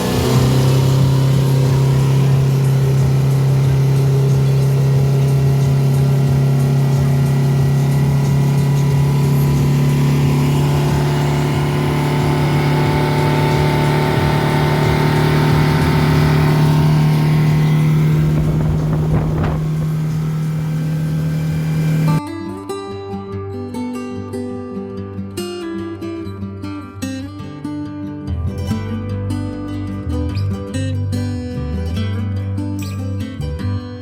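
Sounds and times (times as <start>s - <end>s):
outboard motor running: 0.0s - 22.2s
water and wind rushing: 16.0s - 20.6s.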